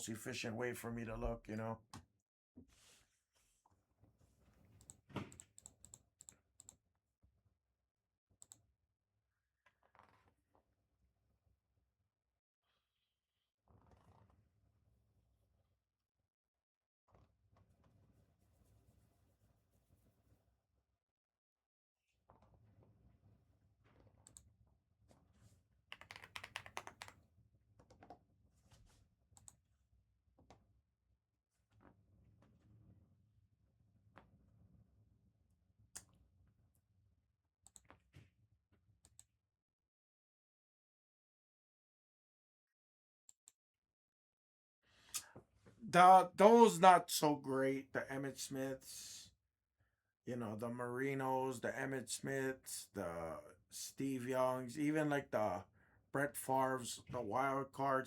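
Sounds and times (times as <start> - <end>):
computer keyboard typing: 25.9 - 27.1.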